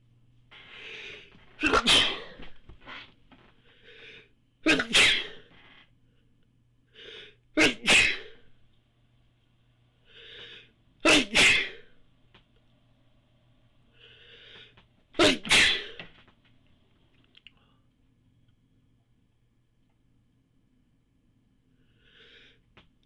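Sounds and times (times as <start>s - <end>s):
person sneezing: 0.7s - 3.1s, 4.6s - 5.7s, 7.6s - 8.5s, 11.0s - 11.9s, 15.2s - 16.2s.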